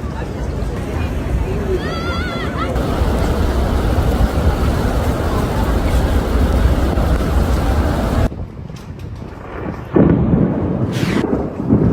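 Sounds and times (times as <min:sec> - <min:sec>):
rainstorm: 0:00.0 - 0:11.9
wind buffeting microphone: 0:02.7 - 0:11.9.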